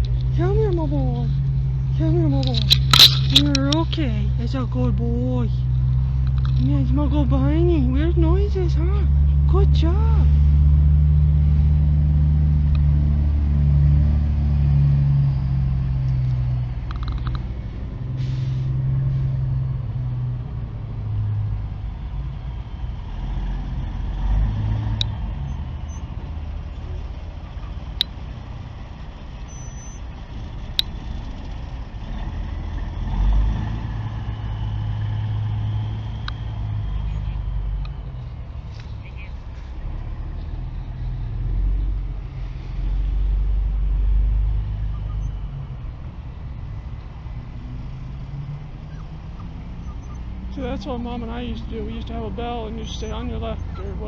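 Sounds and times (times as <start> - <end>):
heavy vehicle engine rumbling: 0.0 - 54.0
sharp clicks: 2.4 - 4.0, 16.0 - 17.6, 30.7 - 31.5, 35.8 - 37.0.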